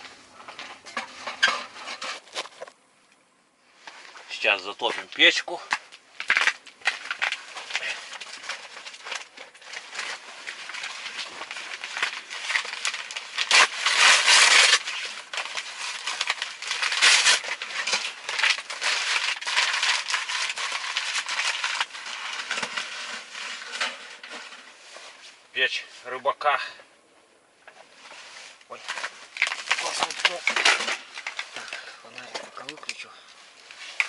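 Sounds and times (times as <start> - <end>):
stove crackling and rustling: 0.0 - 26.1, 27.6 - 34.0.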